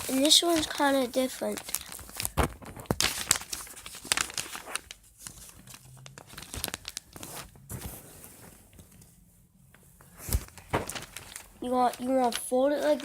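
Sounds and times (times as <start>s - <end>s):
paper crinkling and rustling: 0.0s - 13.0s.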